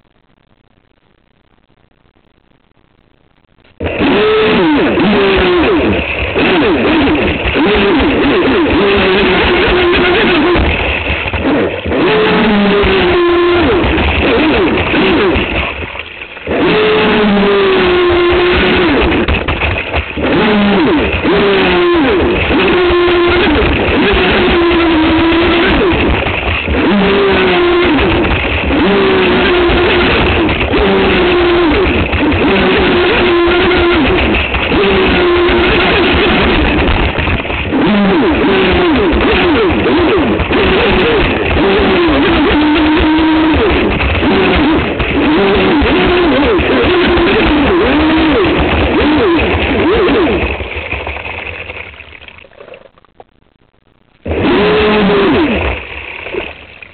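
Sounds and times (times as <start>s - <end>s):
motor whining: 3.8s - 50.6s, 54.2s - 55.8s
water rushing against hull: 3.8s - 53.5s, 54.1s - 56.9s
wind noise: 17.4s - 49.8s.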